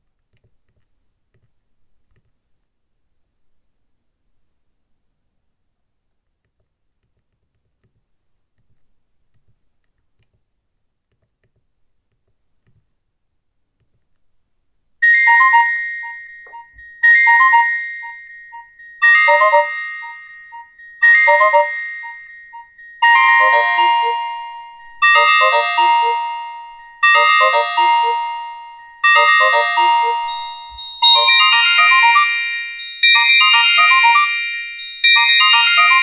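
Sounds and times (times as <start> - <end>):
chiming phone ringtone: 15.0 - 36.0.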